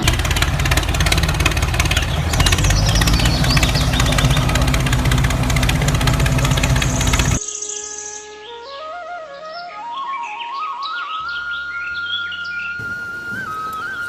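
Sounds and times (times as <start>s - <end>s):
engine idling with knock: 0.0s - 7.4s.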